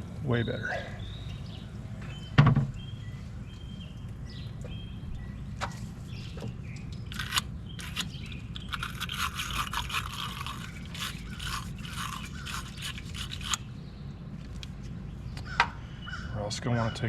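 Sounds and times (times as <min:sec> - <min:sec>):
low steady hum: 0:00.0 - 0:17.0
sharp clicks: 0:06.7 - 0:13.6
brush scraping metal: 0:07.1 - 0:13.6.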